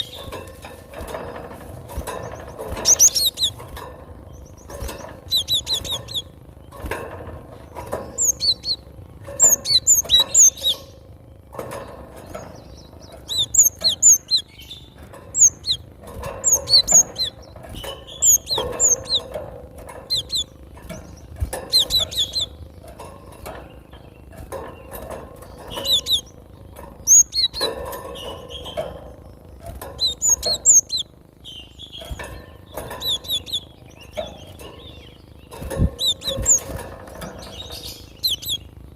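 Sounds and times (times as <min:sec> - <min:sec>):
bird singing high sharp notes: 0:37.4 - 0:38.7.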